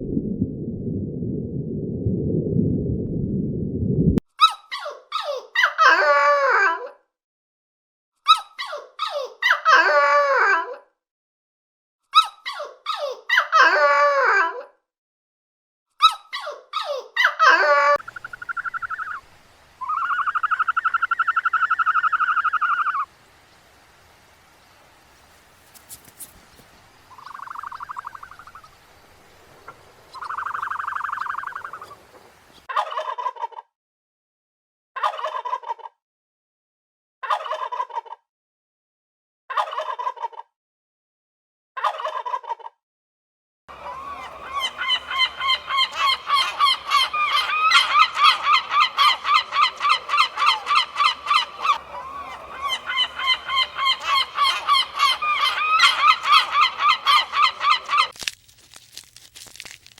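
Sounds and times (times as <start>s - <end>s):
birds calling: 17.4s - 32.7s, 43.7s - 58.2s
rattling bird calls: 43.9s - 58.1s.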